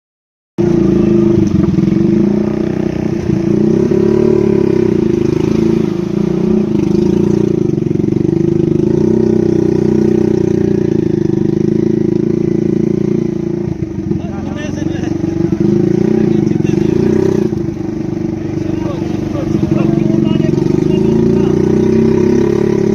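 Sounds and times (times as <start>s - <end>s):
engine running steadily: 0.6s - 22.9s.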